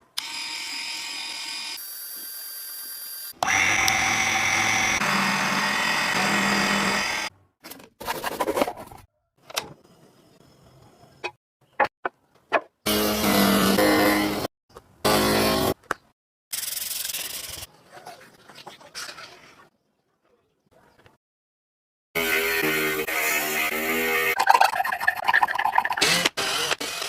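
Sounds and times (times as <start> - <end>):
small electric motor whining: 0.2 - 7.3.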